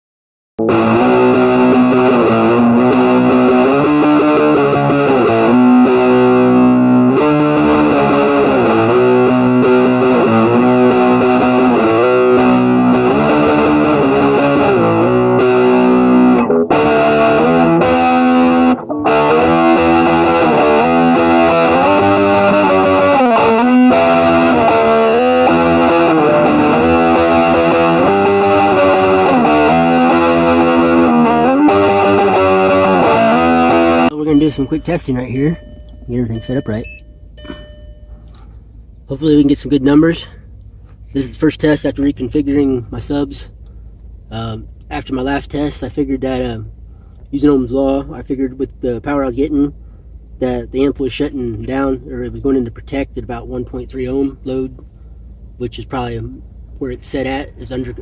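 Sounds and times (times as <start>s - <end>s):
distorted electric guitar: 0.6s - 34.7s.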